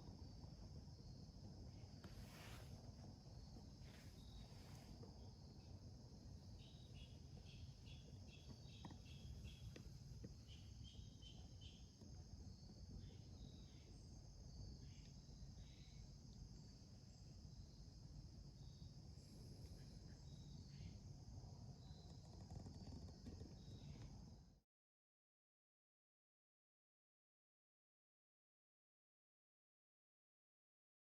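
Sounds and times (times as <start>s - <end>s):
crickets trilling: 0.1s - 24.5s.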